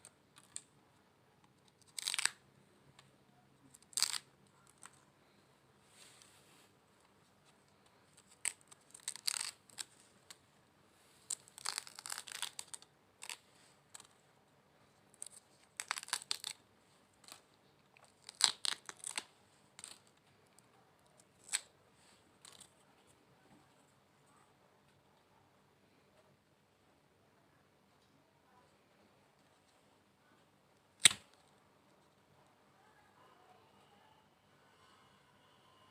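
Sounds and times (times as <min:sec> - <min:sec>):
fruit skin cracking and tearing: 0:01.7 - 0:02.4, 0:03.7 - 0:05.0, 0:08.2 - 0:10.4, 0:11.3 - 0:13.4, 0:15.2 - 0:16.6, 0:18.0 - 0:20.2, 0:21.3 - 0:21.7, 0:31.0 - 0:31.3.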